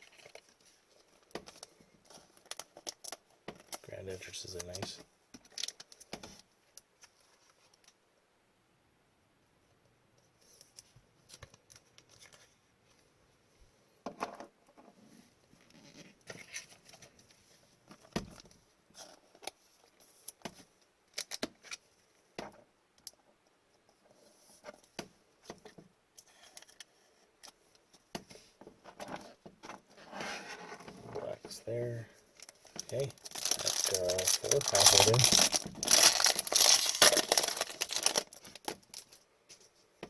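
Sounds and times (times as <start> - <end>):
cards being shuffled and flicked: 32.4 - 39.2.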